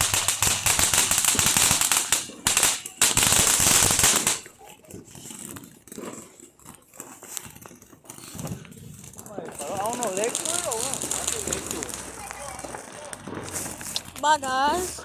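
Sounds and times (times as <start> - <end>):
firecrackers crackling: 0.0 - 4.7, 9.3 - 14.8.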